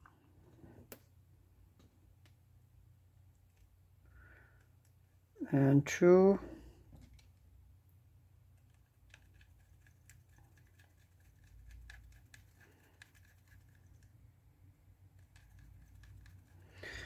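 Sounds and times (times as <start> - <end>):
faint small clicks and taps: 0.8 - 1.1, 1.8 - 2.4.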